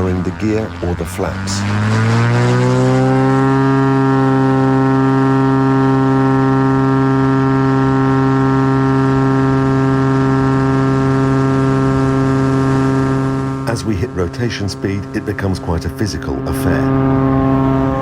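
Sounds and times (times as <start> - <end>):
propeller plane engine drone: 0.0 - 18.0.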